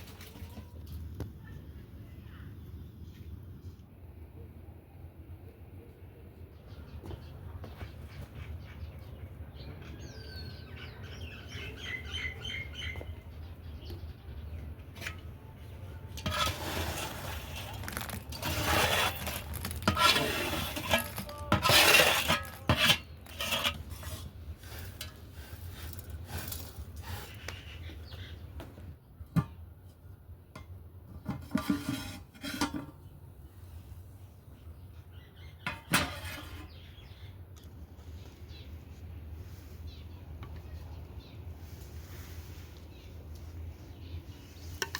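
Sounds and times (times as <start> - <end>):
metal pots and dishes clattering: 16.2 - 23.8, 30.6 - 33.0, 35.6 - 36.8.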